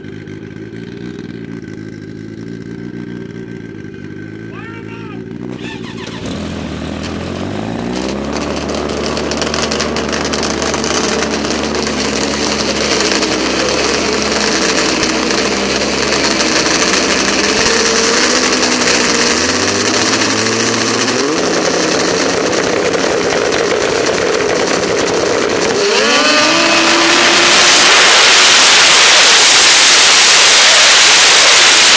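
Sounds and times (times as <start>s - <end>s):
snowmobile engine running loudly: 0.0s - 31.9s
hiss: 26.8s - 31.9s.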